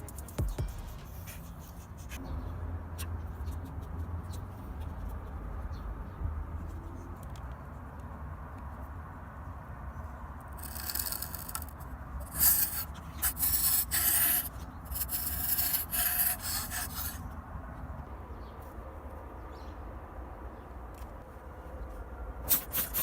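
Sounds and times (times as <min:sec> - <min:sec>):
rubbing and scraping metal: 0:10.6 - 0:17.2, 0:22.5 - 0:23.0.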